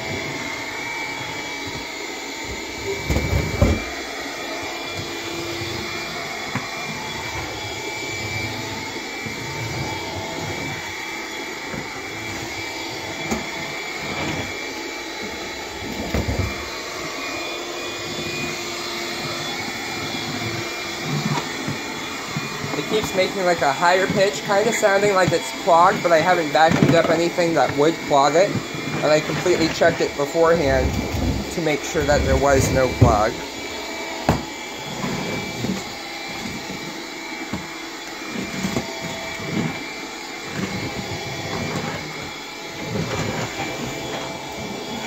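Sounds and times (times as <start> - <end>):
stick vacuum whining: 0.0 - 45.0
vacuum head thumps: 3.0 - 4.0, 34.2 - 34.6.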